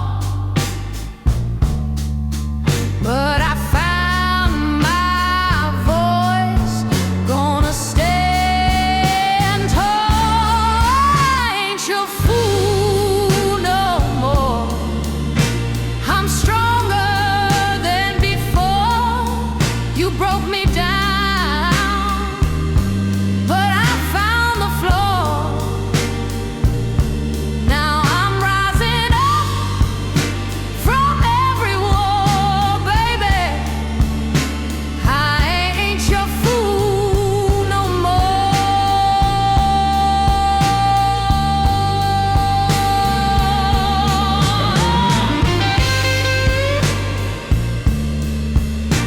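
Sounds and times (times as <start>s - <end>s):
bass line: 0.0s - 49.0s
slide lead melody with vibrato: 0.0s - 49.0s
slow blues music: 0.0s - 49.0s
drum hits: 21.7s - 36.6s, 43.4s - 49.0s.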